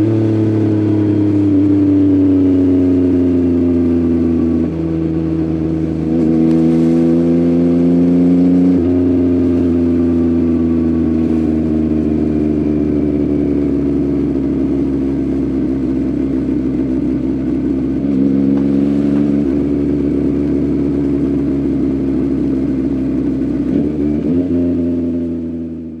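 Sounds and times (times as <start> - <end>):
motorcycle engine accelerating: 0.0 - 26.0.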